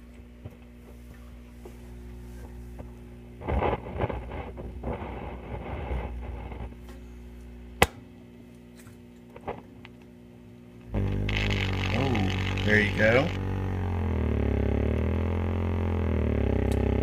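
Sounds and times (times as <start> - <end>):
crackling static: 0.0 - 8.2, 9.2 - 17.0
tube radio humming: 0.0 - 17.0
sharp radio click: 11.0 - 13.4.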